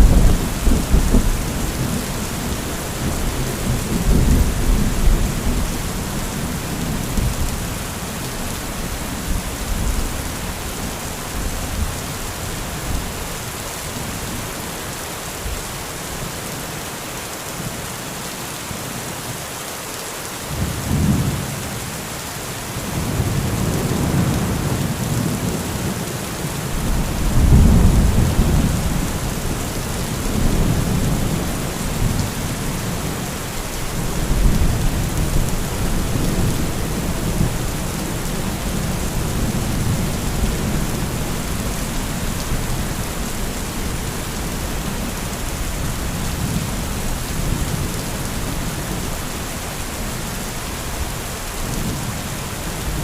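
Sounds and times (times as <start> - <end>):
thunder rumbling: 0.0 - 7.8, 26.7 - 49.0
heavy rain: 0.0 - 53.0.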